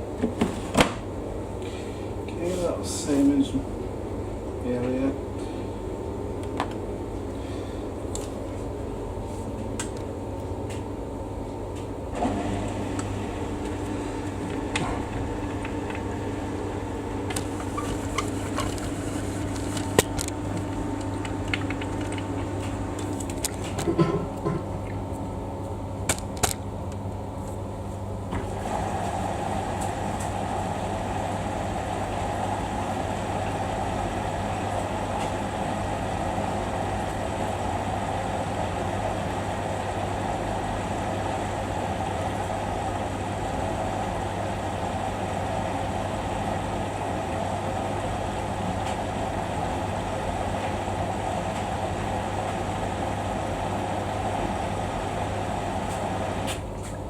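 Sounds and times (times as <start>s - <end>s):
washing machine rushing water: 12.0s - 27.2s, 28.1s - 57.0s
washing machine clicks: 12.9s - 16.2s, 17.2s - 25.0s.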